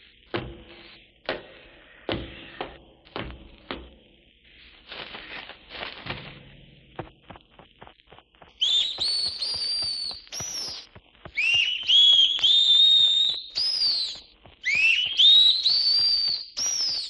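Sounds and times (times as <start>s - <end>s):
shrill whistling shrieks: 8.6s - 17.0s.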